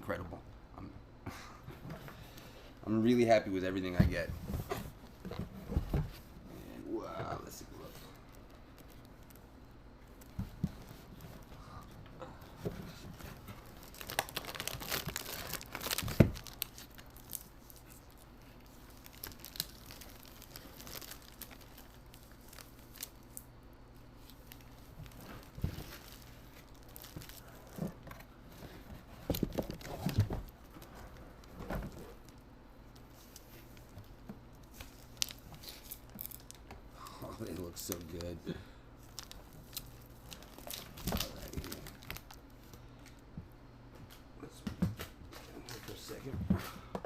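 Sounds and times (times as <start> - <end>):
paper crinkling and tearing: 12.9 - 23.4, 24.2 - 27.8, 34.6 - 36.6, 37.3 - 38.4, 39.0 - 42.7.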